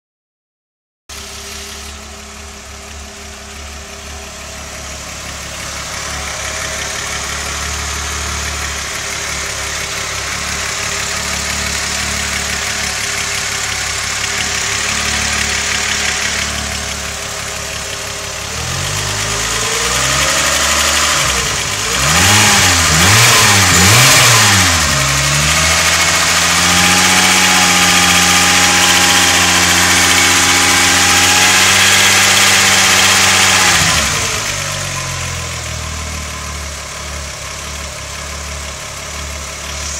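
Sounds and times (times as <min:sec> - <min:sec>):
car engine idling with rattle: 0:01.2 - 0:20.0, 0:33.1 - 0:39.9
engine revving: 0:03.5 - 0:39.9.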